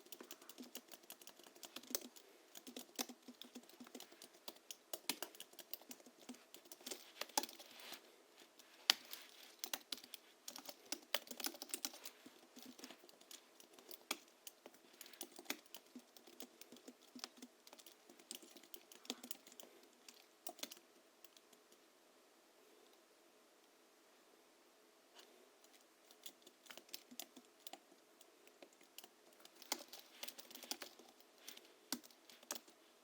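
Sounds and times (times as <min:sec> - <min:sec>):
muted keyboard typing: 0:00.0 - 0:07.7, 0:08.9 - 0:21.6, 0:26.1 - 0:27.8, 0:28.6 - 0:32.8.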